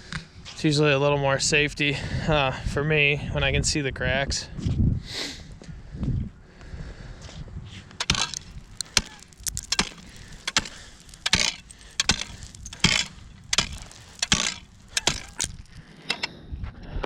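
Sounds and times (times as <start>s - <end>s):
ice bar striking ice: 8.0s - 15.8s.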